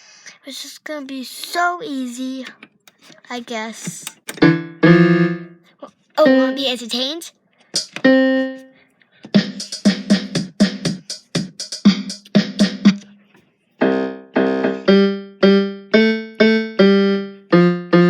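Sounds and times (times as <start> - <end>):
piano keyboard notes: 4.3 - 6.8, 8.0 - 8.7, 13.8 - 18.0.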